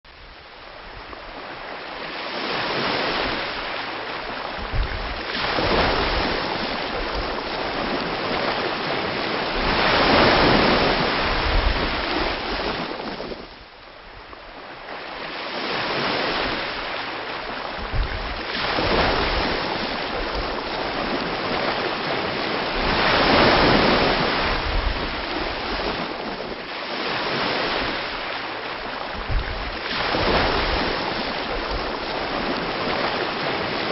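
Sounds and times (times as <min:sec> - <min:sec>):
ocean waves breaking on shore: 0:00.1 - 0:33.9
short low thumps: 0:04.6 - 0:05.2, 0:17.8 - 0:18.4, 0:29.1 - 0:30.9.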